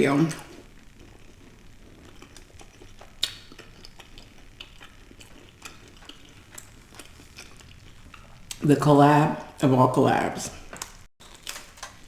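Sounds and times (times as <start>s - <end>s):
chewing with mouth clicks: 0.5s - 8.6s.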